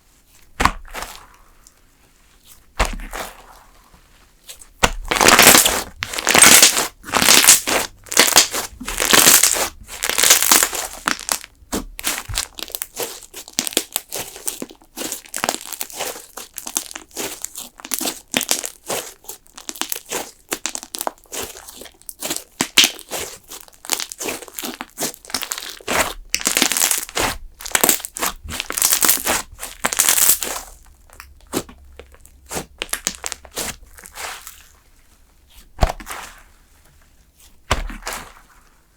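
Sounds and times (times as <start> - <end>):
crackling and popping of air: 0.5 - 1.3, 4.7 - 12.8, 25.2 - 34.2, 35.6 - 36.2
slime squeezed by hand: 4.6 - 34.8.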